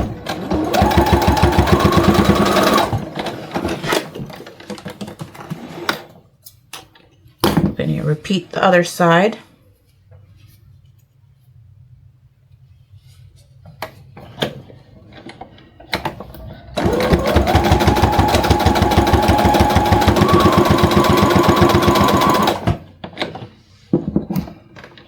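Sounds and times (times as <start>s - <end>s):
sewing machine stitching: 0.0s - 4.4s, 16.8s - 22.9s.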